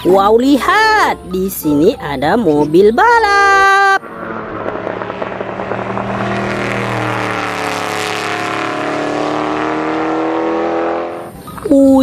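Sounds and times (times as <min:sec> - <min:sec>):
race car engine: 0:03.8 - 0:11.7.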